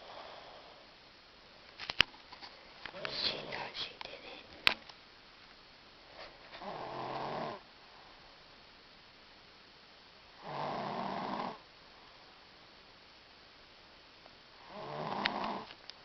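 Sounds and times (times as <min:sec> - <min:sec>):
girl snoring: 0:06.6 - 0:07.6, 0:10.4 - 0:11.6, 0:14.6 - 0:15.7.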